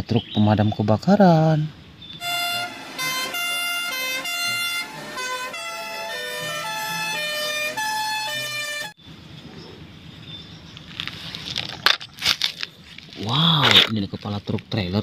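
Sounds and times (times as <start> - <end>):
electronic fire truck siren: 2.2 - 9.0.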